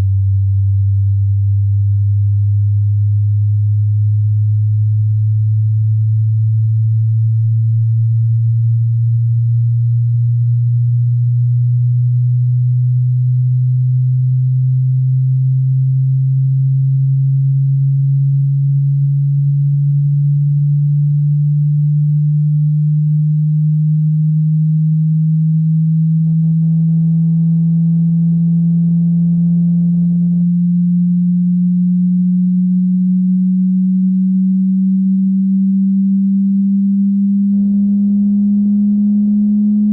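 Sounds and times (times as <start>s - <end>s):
rising sine test tone: 0.0s - 39.9s.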